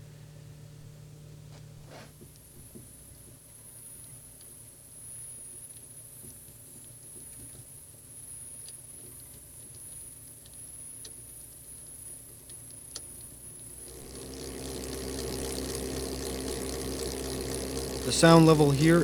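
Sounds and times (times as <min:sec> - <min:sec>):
motor and chain hum: 0:13.8 - 0:19.0.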